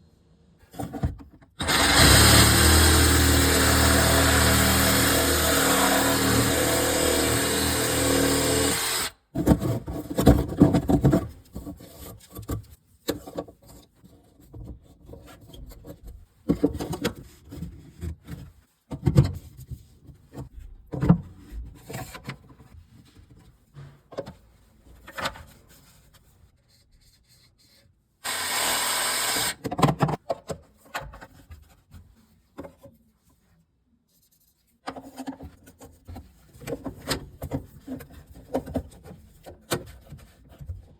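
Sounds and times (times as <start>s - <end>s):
loud steady tool noise: 1.6s - 9.2s, 28.2s - 29.6s
tools scraping and knocking: 9.4s - 26.3s.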